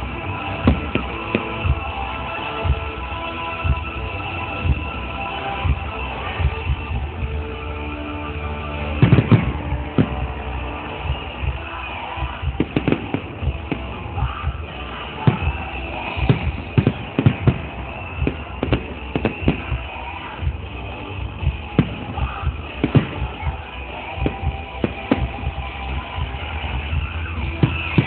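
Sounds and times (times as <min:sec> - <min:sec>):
fireworks bangs: 0:00.0 - 0:03.0, 0:08.9 - 0:28.0
music playing: 0:00.0 - 0:28.0.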